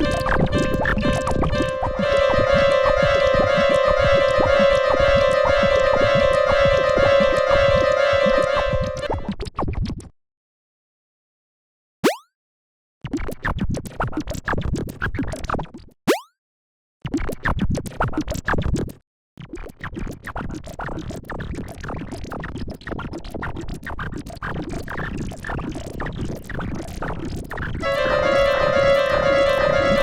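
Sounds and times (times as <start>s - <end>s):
electronic music: 0.0s - 9.3s, 27.8s - 30.0s
scratch-like stuttering: 0.0s - 9.9s.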